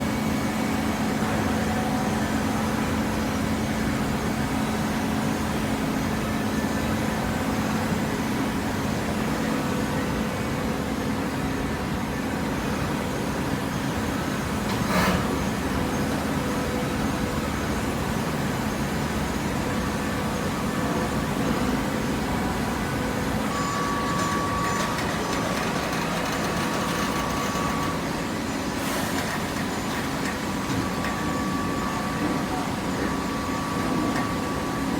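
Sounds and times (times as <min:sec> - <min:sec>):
machine humming: 0:14.4 - 0:34.9.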